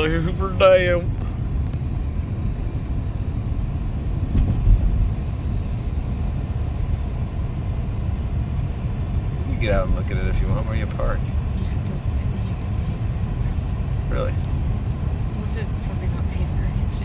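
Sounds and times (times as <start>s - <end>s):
car engine and road noise: 0.0s - 17.0s
low thump: 4.2s - 5.2s.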